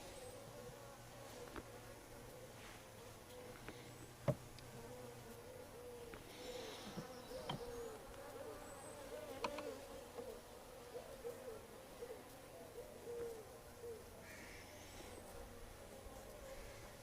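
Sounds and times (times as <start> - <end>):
bees buzzing: 0.0 - 17.0.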